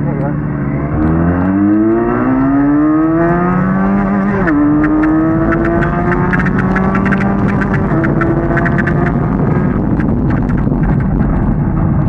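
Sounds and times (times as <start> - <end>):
motorcycle engine accelerating hard: 0.0 - 12.0
rapid sharp clicks: 4.1 - 11.4.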